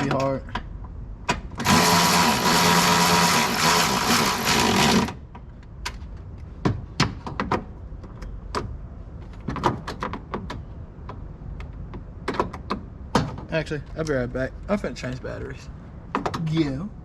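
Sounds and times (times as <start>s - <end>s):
power tool motor running: 1.6s - 5.2s.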